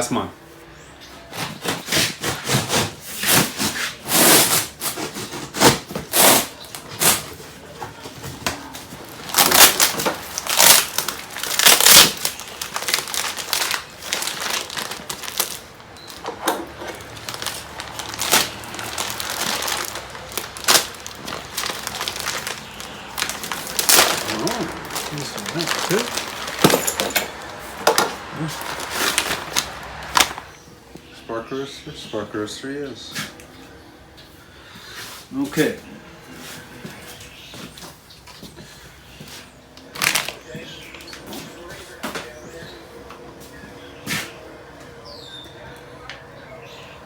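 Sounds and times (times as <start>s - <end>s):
packaging crinkling and tearing: 2.5s - 7.4s, 8.8s - 30.5s, 39.8s - 41.2s.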